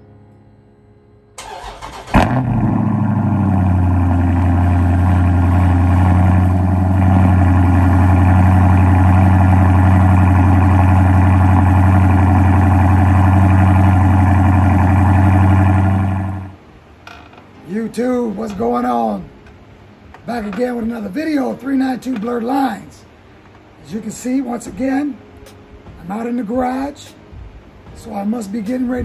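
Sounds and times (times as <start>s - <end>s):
car starter cranking: 1.4s - 16.5s
car engine idling: 1.4s - 16.6s.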